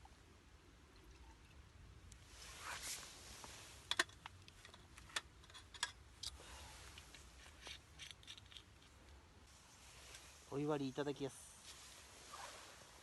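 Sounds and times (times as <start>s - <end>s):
brief hiss: 2.3s - 3.9s.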